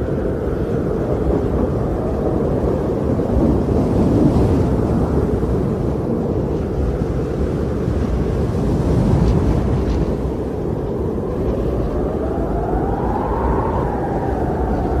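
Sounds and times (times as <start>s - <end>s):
strong wind blowing: 0.0s - 15.0s.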